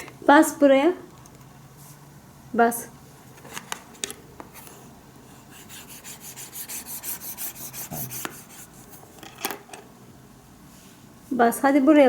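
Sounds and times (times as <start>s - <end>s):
stylus scribbling on tablet: 5.3s - 9.0s.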